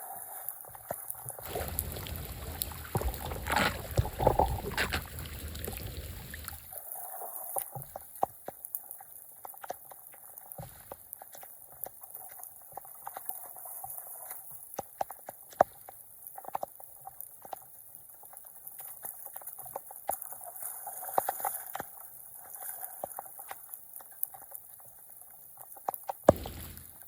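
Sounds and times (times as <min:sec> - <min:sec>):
water trickling and gurgling: 0:00.0 - 0:08.2
water drips and splashes: 0:00.4 - 0:14.3, 0:26.2 - 0:27.0.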